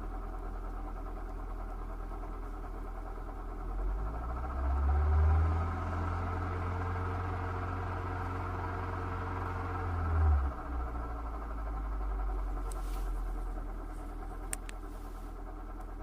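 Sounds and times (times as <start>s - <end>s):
car engine revving: 3.7s - 16.0s.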